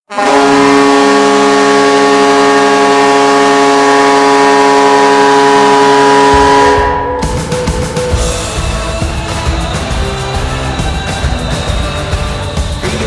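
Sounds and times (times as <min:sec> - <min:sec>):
goal horn blast: 0:00.0 - 0:10.8
low music beat: 0:05.2 - 0:13.0.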